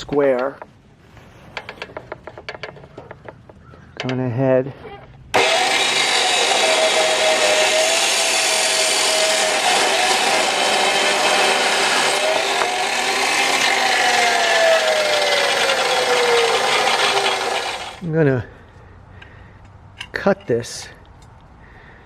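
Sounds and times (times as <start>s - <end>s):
power tool grinding metal tubing: 5.4s - 18.0s.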